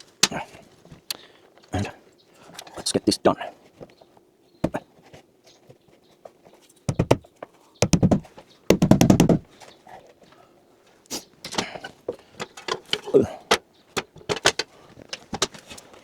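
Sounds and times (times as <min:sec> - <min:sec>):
rapid knocking on wall: 0:06.9 - 0:09.5.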